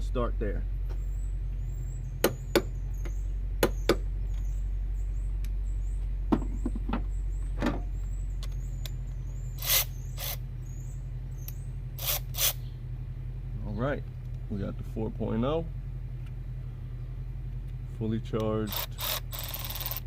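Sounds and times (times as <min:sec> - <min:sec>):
steady low hum: 0:00.0 - 0:20.0
hand tools clicking on a bolt: 0:18.4 - 0:20.0.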